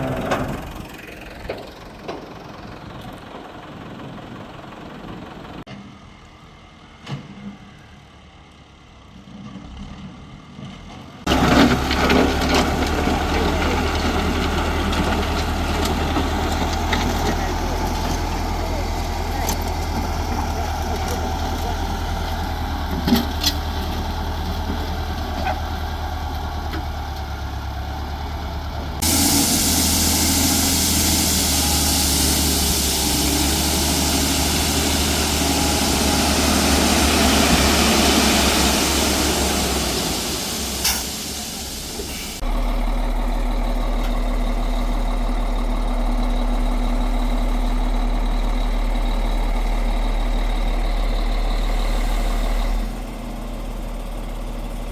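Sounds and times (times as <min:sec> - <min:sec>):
heavy engine idling: 0:00.0 - 0:05.7, 0:11.2 - 0:54.9
loud rushing noise: 0:29.0 - 0:42.5.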